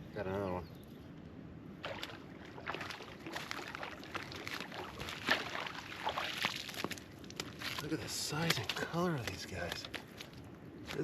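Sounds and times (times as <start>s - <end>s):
fish splashing in water: 1.8s - 7.0s.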